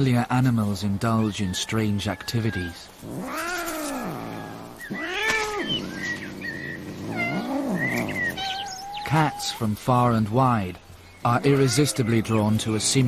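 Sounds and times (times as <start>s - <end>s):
cat meowing: 2.5s - 6.2s, 7.0s - 9.6s.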